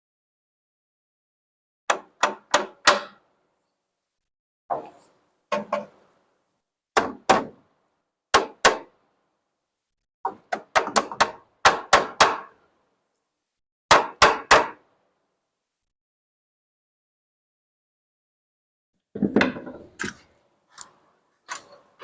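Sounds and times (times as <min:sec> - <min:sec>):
hammer striking wood: 0:01.9 - 0:03.2, 0:07.0 - 0:07.6, 0:08.3 - 0:09.0, 0:10.3 - 0:12.6, 0:13.9 - 0:14.8.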